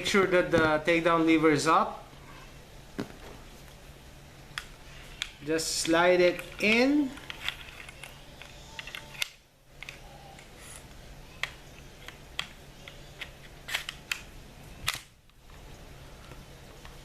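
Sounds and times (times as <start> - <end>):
pistol slide clicks and scrapes: 13.2 - 15.1.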